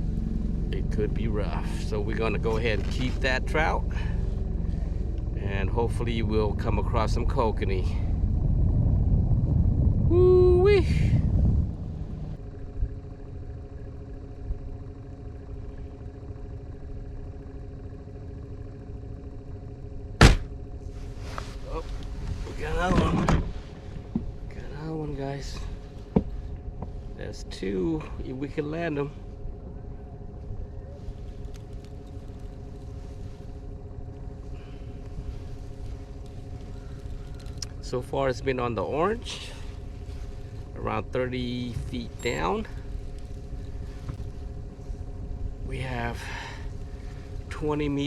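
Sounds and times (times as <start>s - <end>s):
boat motor rumbling: 0.0s - 48.0s
sharp loud knock: 20.2s - 20.5s
faint clicks: 35.9s - 37.8s.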